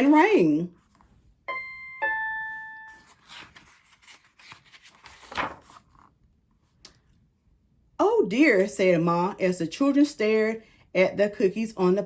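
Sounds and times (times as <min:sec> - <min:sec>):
two-tone doorbell chime: 0:01.5 - 0:03.0.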